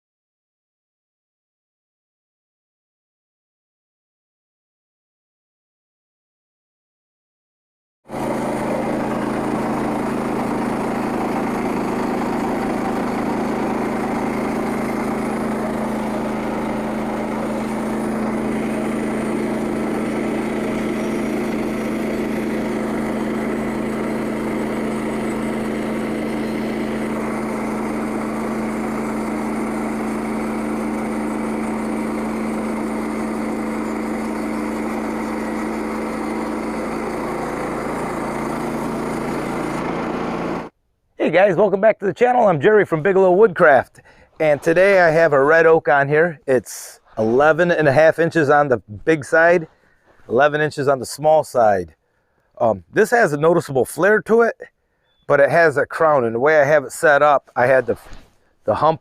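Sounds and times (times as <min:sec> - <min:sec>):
small gasoline engine running: 0:08.1 - 0:40.8.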